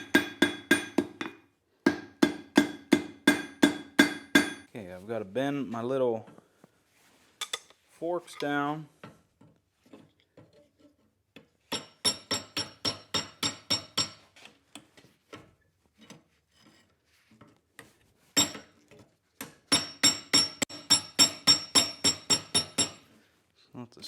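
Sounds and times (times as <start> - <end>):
hammer striking steel on anvil: 0.0 - 4.7, 11.7 - 14.2, 18.4 - 18.7, 19.7 - 23.0.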